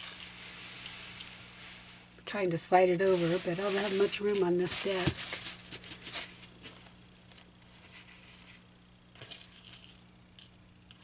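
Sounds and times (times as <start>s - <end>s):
fabric rustling and scraping: 0.0s - 2.2s, 3.0s - 8.7s.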